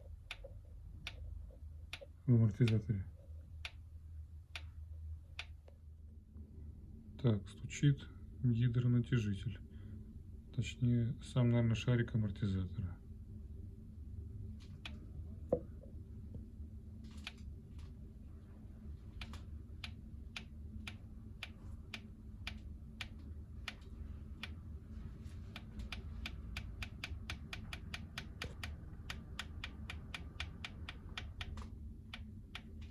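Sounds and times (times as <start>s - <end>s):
light ticking from engine: 0.0s - 3.0s, 4.5s - 5.8s, 19.2s - 24.8s, 25.4s - 32.9s.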